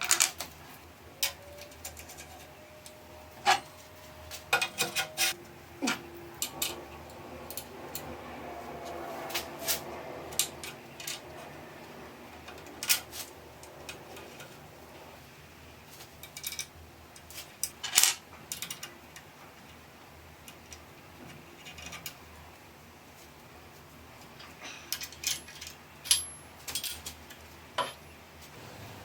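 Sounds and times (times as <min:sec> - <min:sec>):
metal rubbing and scraping: 0:00.6 - 0:16.6.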